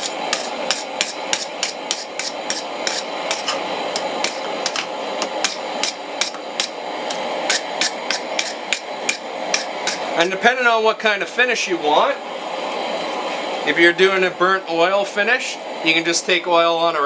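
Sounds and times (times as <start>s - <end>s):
wire brush scraping metal: 0.0s - 6.8s, 7.5s - 10.3s.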